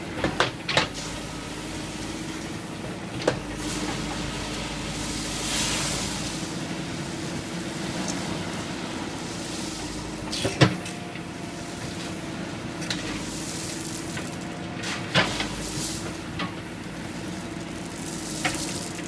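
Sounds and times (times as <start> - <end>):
backhoe engine humming: 0.0 - 19.0.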